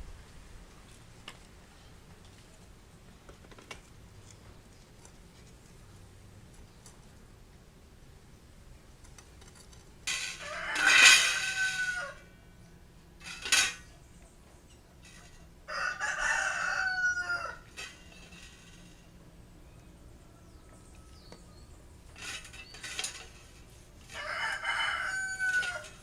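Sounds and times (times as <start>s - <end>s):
rooster crowing: 10.2s - 12.3s, 15.6s - 17.9s, 24.1s - 26.0s.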